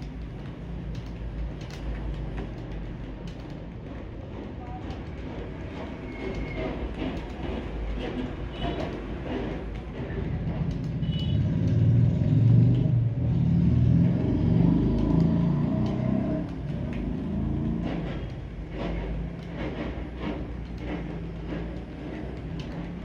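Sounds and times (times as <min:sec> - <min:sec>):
sharp clicks: 0:00.0 - 0:03.7, 0:14.9 - 0:17.1, 0:20.6 - 0:23.0.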